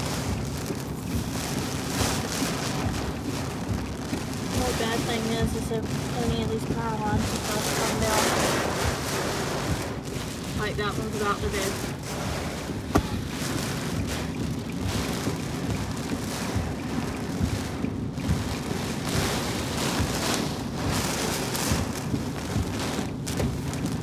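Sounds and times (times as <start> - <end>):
rain buffeting microphone: 0.0 - 24.0
sharp thump: 12.8 - 13.4.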